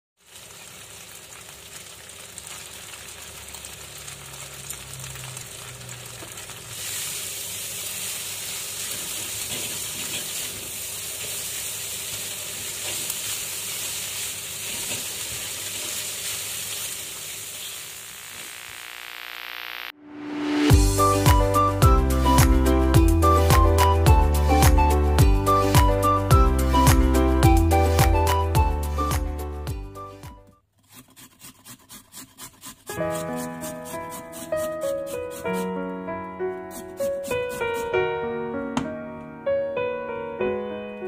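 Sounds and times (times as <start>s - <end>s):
rice sizzling in hot oil: 0.2s - 19.8s
music: 20.0s - 30.6s, 32.9s - 41.0s.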